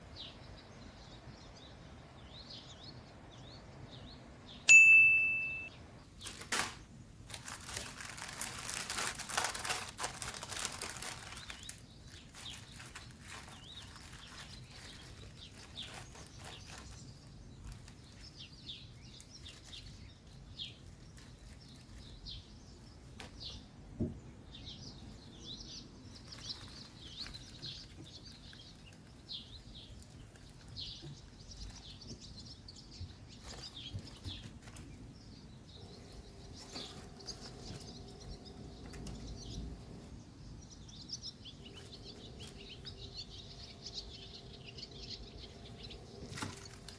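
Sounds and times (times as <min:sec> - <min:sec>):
small birds chirping: 0:00.0 - 0:46.9
bright ringing ding: 0:04.7 - 0:05.8
noisy rustling: 0:05.6 - 0:46.9.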